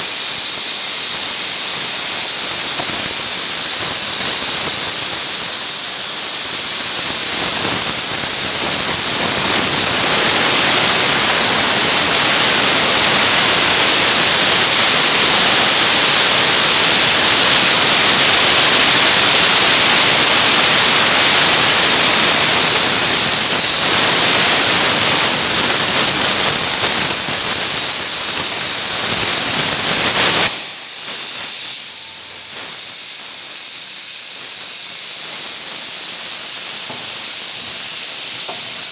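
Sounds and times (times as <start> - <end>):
cutting torch hissing: 0.0 - 38.9.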